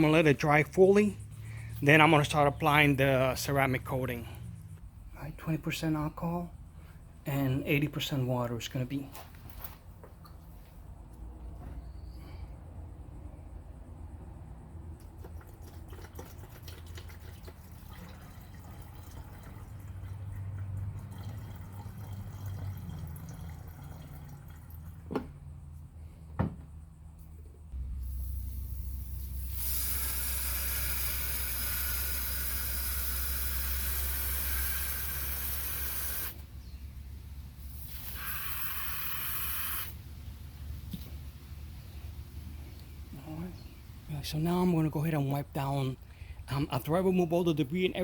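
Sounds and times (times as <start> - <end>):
liquid pouring into a bottle: 15.2 - 25.0.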